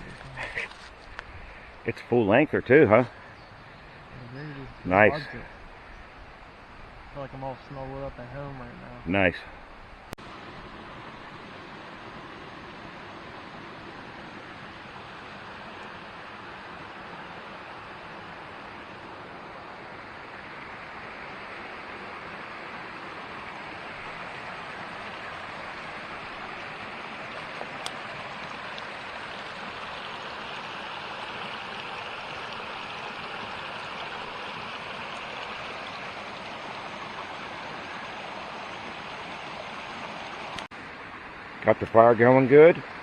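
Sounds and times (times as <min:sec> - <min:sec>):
water pouring over waterfall: 0:23.8 - 0:40.6.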